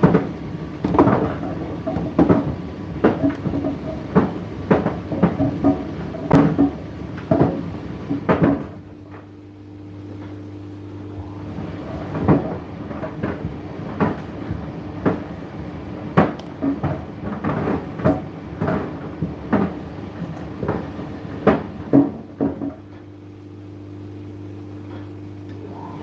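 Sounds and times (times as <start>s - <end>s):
load knocking in dryer drum: 0.0s - 8.8s, 11.6s - 15.4s, 16.1s - 23.0s
tumble dryer motor hum: 0.0s - 26.0s.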